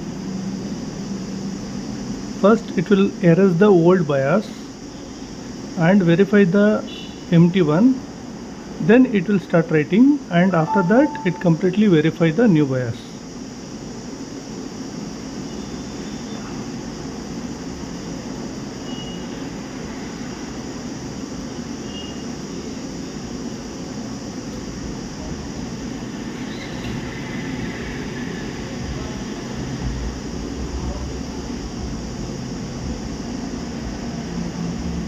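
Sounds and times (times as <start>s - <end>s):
faint short high beeps: 10.6s - 11.6s
low rumbling background noise: 22.4s - 35.0s.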